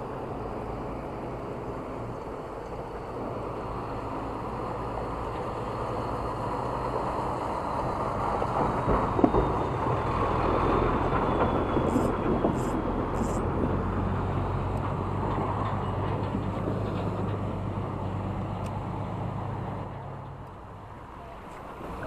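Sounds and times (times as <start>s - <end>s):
heavy trucks passing: 0.0s - 22.0s.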